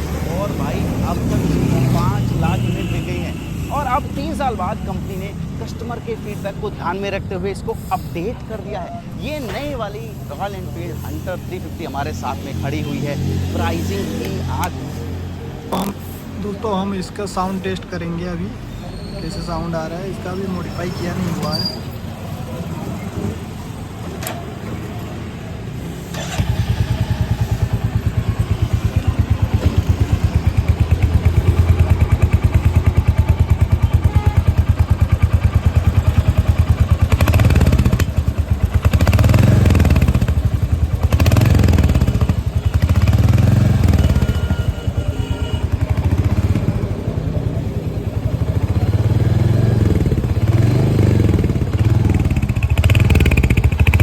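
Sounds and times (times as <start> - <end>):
engine revving: 0.0 - 3.2, 25.8 - 32.7, 33.4 - 44.6, 48.3 - 54.0
motorcycle engine starting and idling: 26.0 - 44.6, 45.2 - 54.0.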